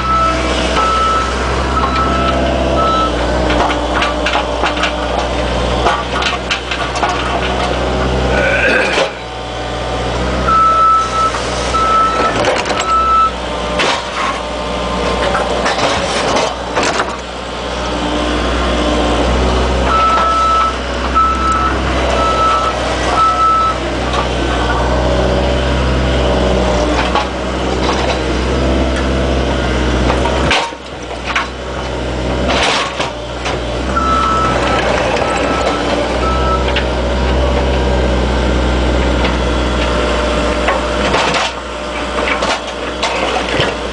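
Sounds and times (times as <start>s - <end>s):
travel alarm beeping: 0.0s - 3.2s, 10.5s - 12.3s, 12.9s - 13.3s, 19.9s - 23.8s
diesel engine droning: 0.0s - 43.9s
knocks and cracks from work: 3.4s - 7.8s, 12.1s - 12.9s, 13.8s - 14.4s, 15.1s - 17.3s, 30.0s - 33.6s, 40.6s - 43.8s.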